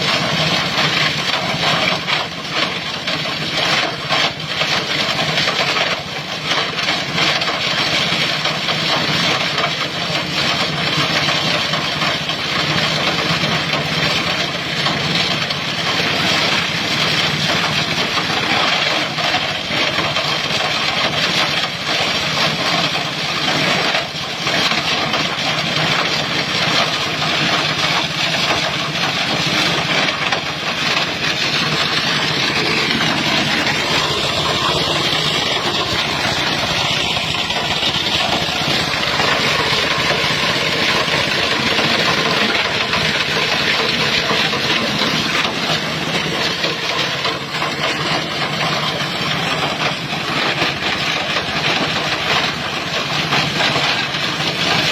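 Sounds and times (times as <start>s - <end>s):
plastic shredder machine running: 0.0s - 54.9s.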